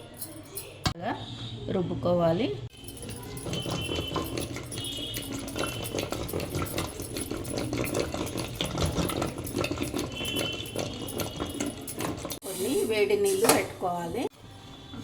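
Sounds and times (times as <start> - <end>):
lentils being mashed: 2.8 - 12.4.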